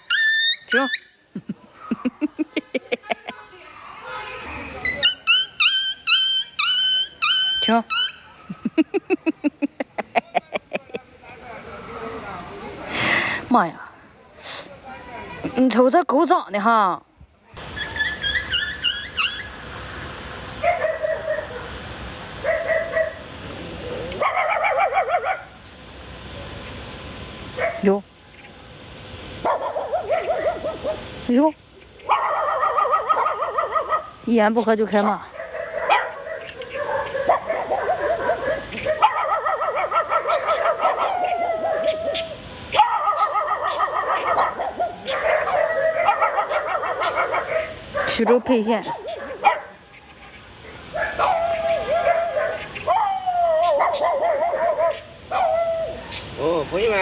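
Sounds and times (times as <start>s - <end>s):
animal-like calls: 0.0s - 2.3s, 3.8s - 8.9s, 17.6s - 19.8s, 35.1s - 56.4s
dogs barking and yapping: 0.0s - 10.3s, 17.6s - 19.7s, 20.5s - 25.6s, 27.5s - 28.0s, 29.1s - 34.2s, 34.8s - 56.9s
dog howling: 32.1s - 34.1s, 35.3s - 47.8s, 50.9s - 56.2s.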